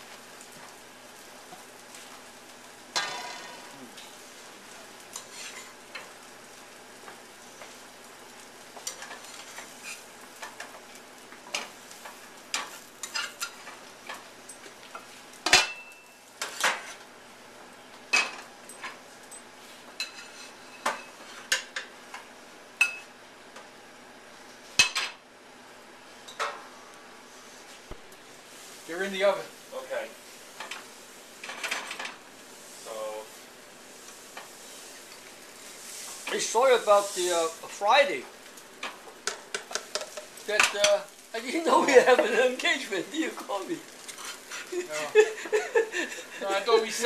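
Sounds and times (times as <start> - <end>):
food frying in a pan: 0.0 - 47.0
metal utensils and pans clinking: 2.9 - 3.6, 12.5 - 17.0, 38.8 - 42.6.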